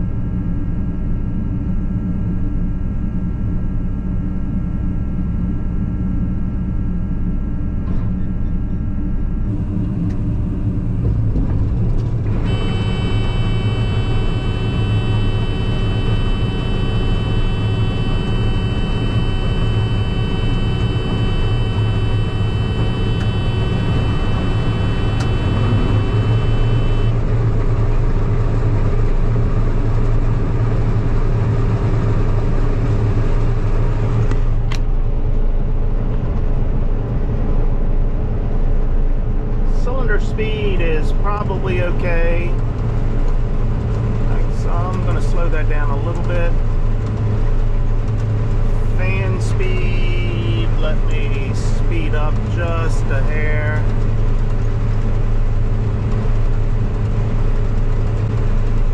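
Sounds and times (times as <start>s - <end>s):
combine harvester engine drone: 0.0s - 58.9s
high whining tones: 12.0s - 27.3s.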